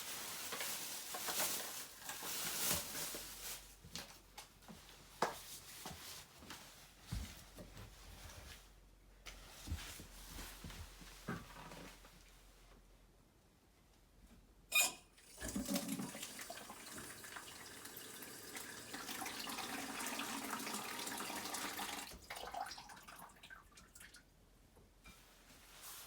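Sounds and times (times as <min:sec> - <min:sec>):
water running from faucet: 0:15.2 - 0:23.6.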